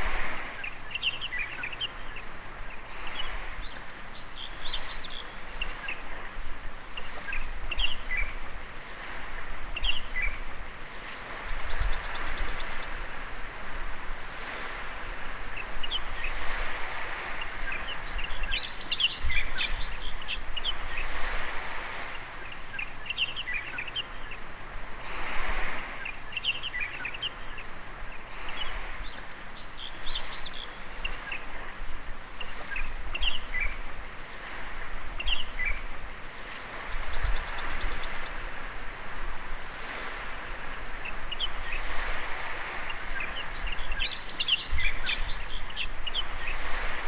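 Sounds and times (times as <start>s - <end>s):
waves washing onto beach: 0.0s - 47.0s
birds chirping and calling: 36.8s - 38.6s, 42.8s - 46.8s.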